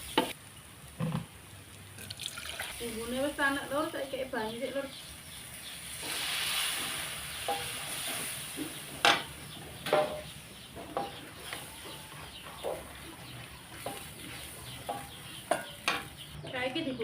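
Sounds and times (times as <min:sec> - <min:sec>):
mixture sizzling: 0:02.0 - 0:10.1, 0:11.0 - 0:16.6
water hissing in hot wok: 0:02.2 - 0:03.9, 0:05.1 - 0:09.1
spatula scraping and knocking pan: 0:05.9 - 0:16.5.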